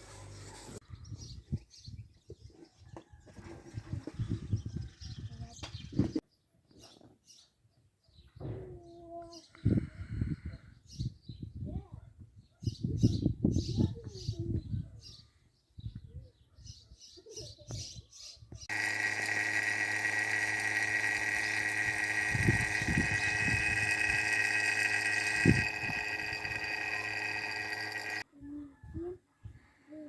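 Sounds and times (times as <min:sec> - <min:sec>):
electric motor whining: 0:18.7 - 0:28.2.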